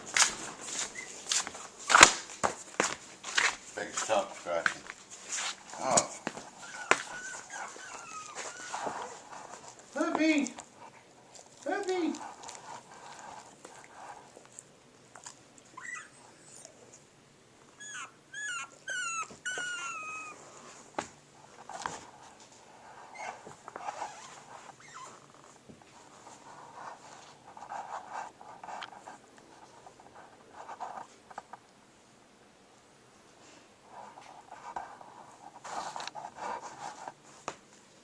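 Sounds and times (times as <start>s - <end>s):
scuffling and rustling: 0.0s - 14.4s, 33.3s - 38.0s
puppy whimpering: 0.8s - 1.2s, 5.8s - 9.8s, 15.2s - 17.0s, 17.7s - 20.5s, 23.1s - 25.5s.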